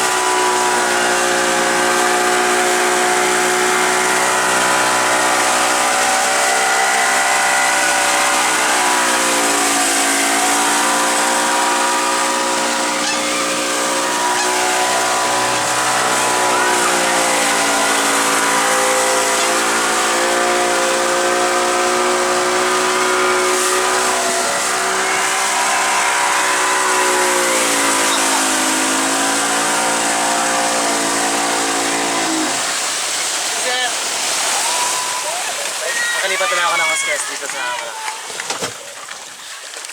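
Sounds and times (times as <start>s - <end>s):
motorboat engine running: 0.0s - 39.9s
wind and water rushing: 0.0s - 39.9s.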